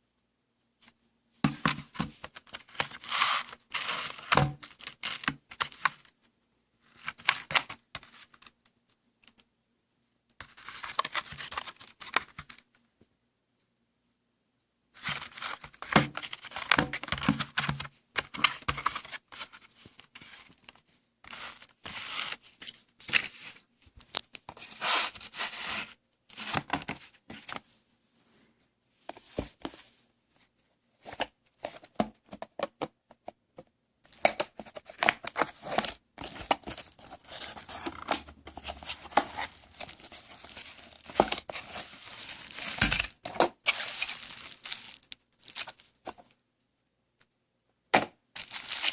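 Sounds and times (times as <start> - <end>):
packaging crinkling and tearing: 34.2 - 45.9, 48.4 - 48.9.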